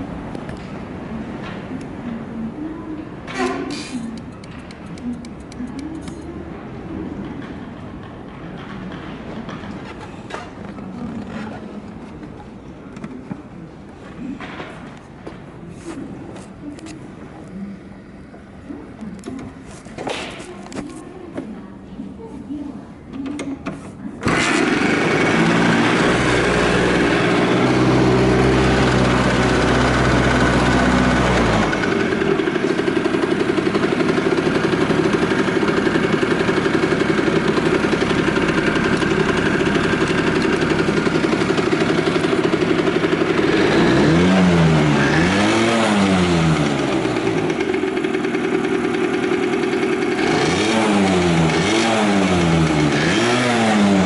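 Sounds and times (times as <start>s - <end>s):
two-stroke engine idling and revving: 24.2s - 54.0s.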